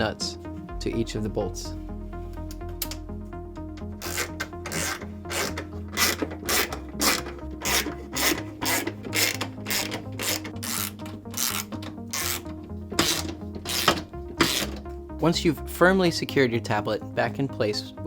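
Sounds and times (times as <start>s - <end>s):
background music: 0.0s - 18.0s
ratchet wrench strokes: 4.0s - 12.4s, 13.0s - 14.8s.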